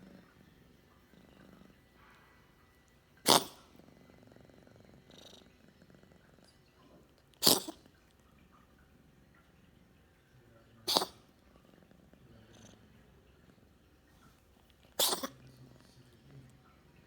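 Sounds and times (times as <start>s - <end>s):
faint cat purring: 0.0s - 17.0s
cat sneezing: 3.2s - 3.7s, 7.4s - 7.8s, 10.8s - 11.3s, 14.9s - 15.5s.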